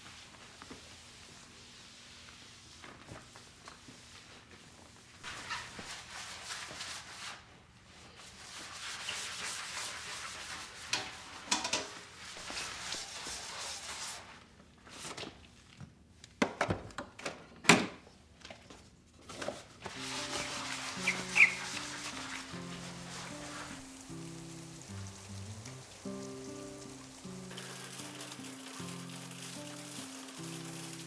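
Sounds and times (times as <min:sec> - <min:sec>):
rustling and handling: 0:18.2 - 0:24.4
soft background music: 0:19.9 - 0:31.0.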